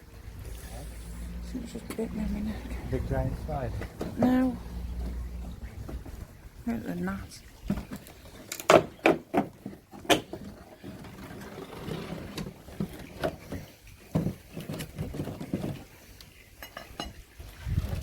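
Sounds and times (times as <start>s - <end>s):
panels and tools handled: 3.4s - 6.4s, 7.6s - 16.1s.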